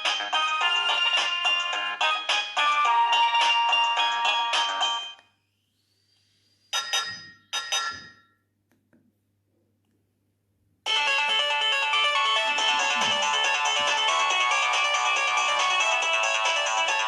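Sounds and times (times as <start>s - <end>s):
phone ringtone melody: 0.0s - 5.2s, 6.7s - 8.2s, 10.9s - 17.0s.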